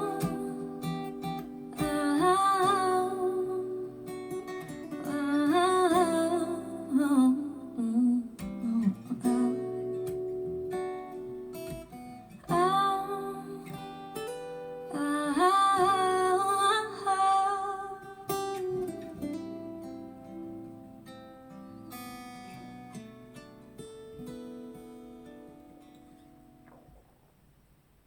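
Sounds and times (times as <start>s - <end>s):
wordless vocals: 0.0s - 10.4s, 12.4s - 20.5s
acoustic guitar: 0.0s - 28.0s.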